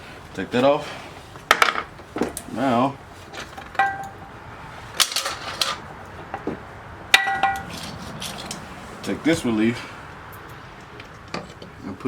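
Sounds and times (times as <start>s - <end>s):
metal parts clicking and rattling: 5.0s - 5.8s, 7.2s - 8.6s.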